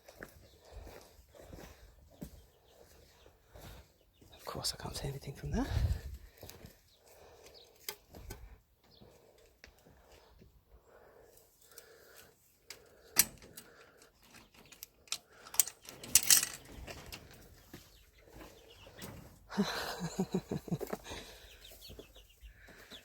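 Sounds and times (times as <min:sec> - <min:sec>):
chickens clucking: 0:16.9 - 0:23.0
chickens pecking taps: 0:20.2 - 0:23.0.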